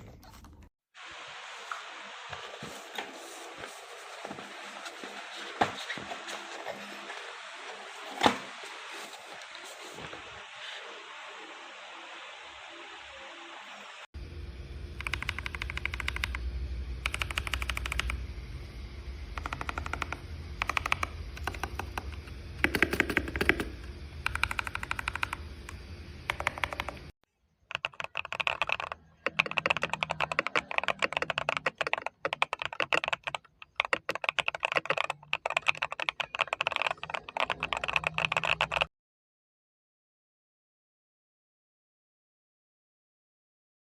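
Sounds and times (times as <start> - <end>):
low steady hum: 14.2 - 27.1
mechanical keyboard typing: 15.0 - 16.4, 17.0 - 18.2, 19.3 - 27.1, 27.7 - 38.9.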